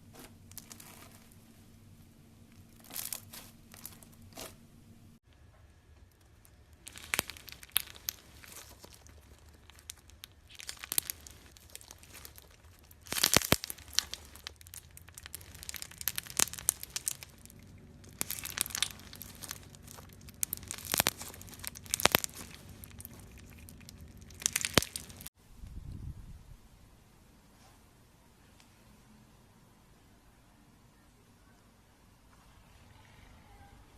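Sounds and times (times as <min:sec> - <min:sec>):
slime crackling and popping: 0:00.1 - 0:01.4, 0:02.5 - 0:04.6, 0:05.8 - 0:25.4.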